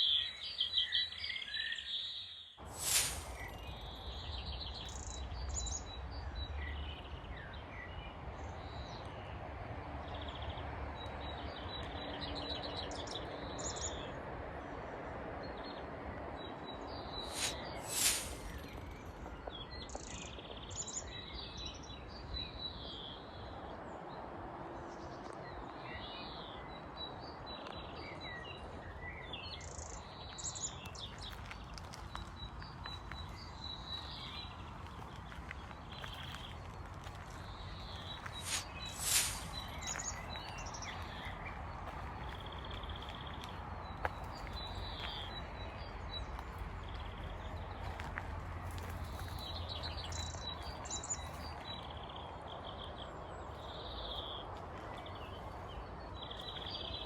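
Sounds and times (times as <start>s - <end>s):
birds chirping and whistling: 38.1s - 41.3s.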